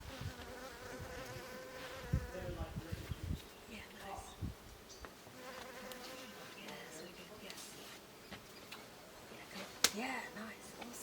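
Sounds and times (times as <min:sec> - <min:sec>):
insects buzzing: 0:04.4 - 0:11.0.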